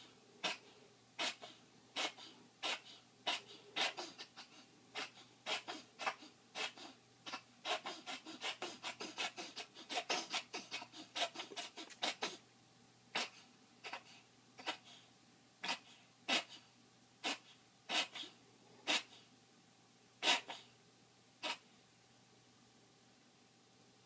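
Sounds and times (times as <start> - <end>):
pet coughing: 0.0 - 12.4, 13.1 - 15.0, 15.6 - 19.3, 20.2 - 20.7, 21.4 - 21.6.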